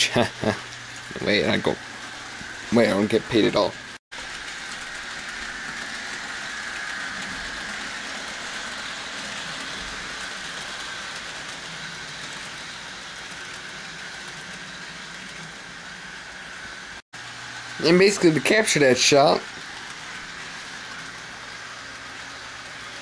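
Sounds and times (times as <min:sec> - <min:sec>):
wheel and rail noise: 0:00.0 - 0:23.0
model train motor whine: 0:00.9 - 0:23.0.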